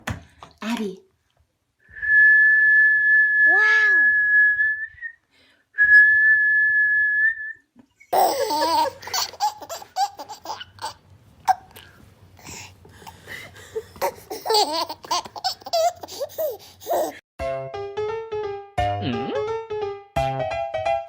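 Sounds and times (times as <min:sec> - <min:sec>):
baby giggling: 0:08.0 - 0:17.2.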